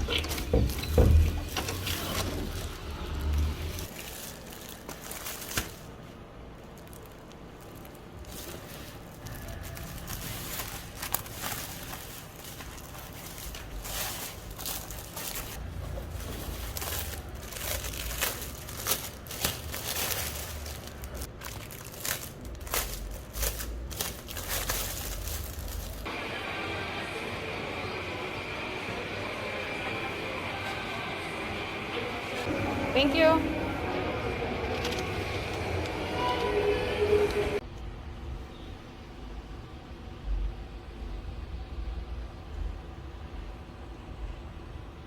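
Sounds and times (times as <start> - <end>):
crinkling and rustling: 0.0 - 26.1.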